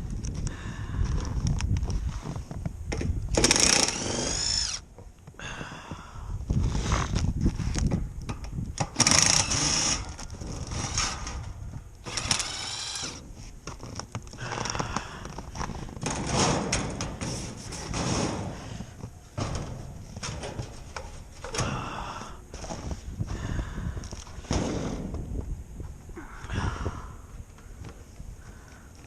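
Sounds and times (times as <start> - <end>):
cordless drill spinning: 3.4 - 4.8, 9.0 - 11.2, 12.0 - 13.2.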